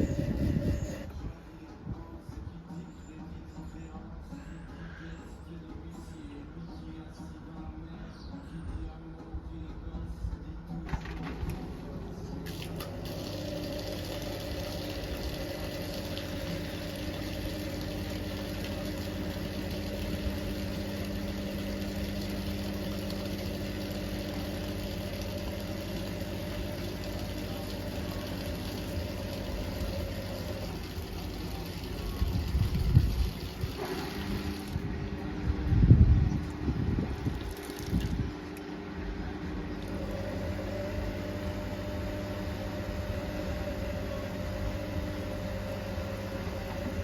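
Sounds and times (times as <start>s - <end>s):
vacuum cleaner humming: 0.0s - 1.1s, 11.6s - 35.9s, 38.9s - 47.0s.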